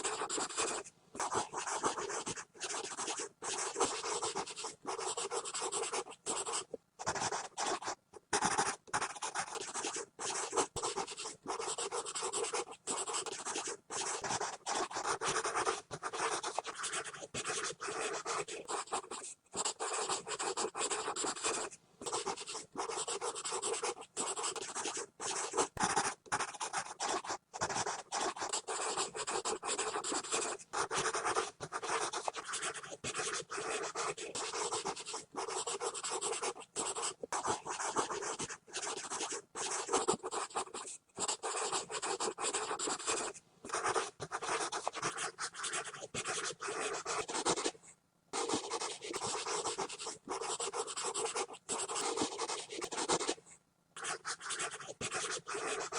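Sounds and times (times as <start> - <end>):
pencil scribbling on paper: 0.0 - 47.8, 48.4 - 53.4, 54.0 - 55.9.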